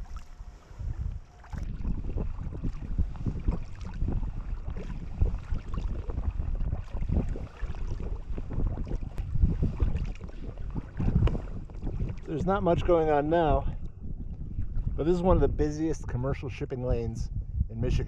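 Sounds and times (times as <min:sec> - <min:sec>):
water sloshing around kayak: 0:00.0 - 0:15.1
wind buffeting microphone: 0:00.0 - 0:18.0.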